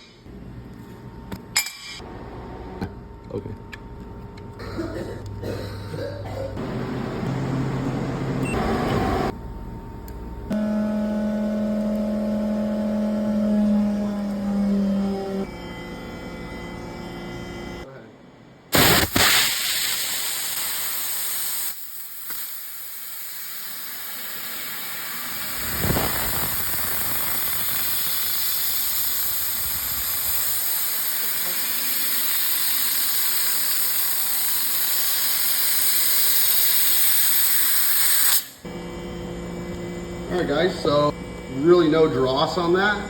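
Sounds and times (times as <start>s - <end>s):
laser cutter gas jet hissing: 18.8s - 38.6s.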